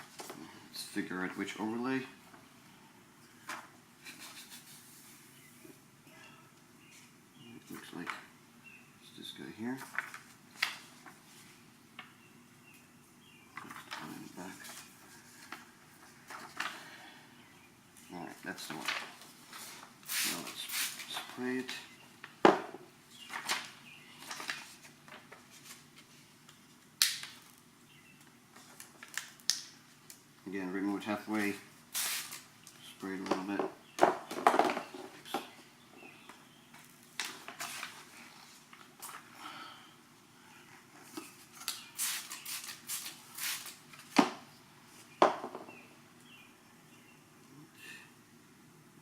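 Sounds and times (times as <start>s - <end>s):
vinyl sheet rustling: 9.7s - 11.7s, 13.6s - 17.0s, 17.9s - 22.4s, 23.1s - 27.6s, 36.7s - 39.3s, 40.8s - 45.2s
spray bottle squirting: 31.9s - 32.4s, 41.9s - 43.8s
spray bottle hissing squirts: 32.0s - 32.4s.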